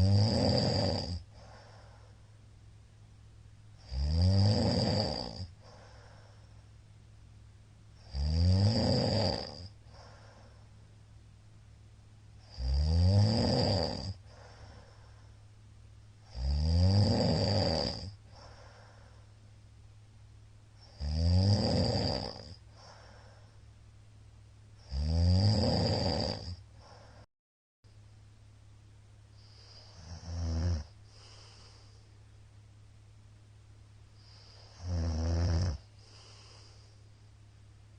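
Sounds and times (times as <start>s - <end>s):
man snoring loudly: 0.0s - 1.6s, 3.8s - 5.6s, 8.0s - 10.2s, 12.4s - 14.5s, 16.3s - 18.6s, 20.8s - 23.0s, 24.8s - 26.6s, 29.6s - 31.7s, 34.4s - 36.7s.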